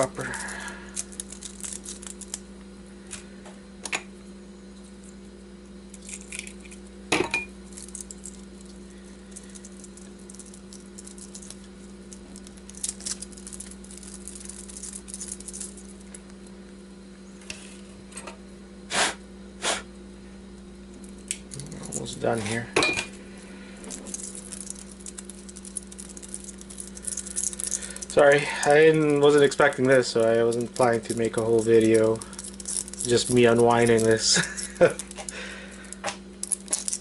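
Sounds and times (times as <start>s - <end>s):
wire clinking and rustling: 0.0s - 2.4s, 5.9s - 16.2s, 23.8s - 37.0s
steady low hum: 0.0s - 37.0s.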